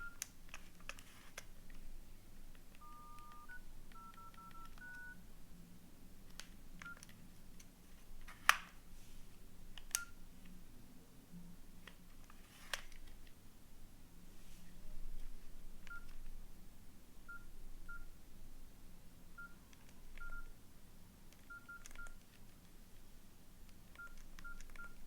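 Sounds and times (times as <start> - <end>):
phone keypad beeps: 0.0 - 0.2, 2.8 - 5.2, 6.8 - 7.0, 15.9 - 16.2, 19.4 - 19.6, 20.2 - 20.5, 21.5 - 22.2, 24.0 - 25.0.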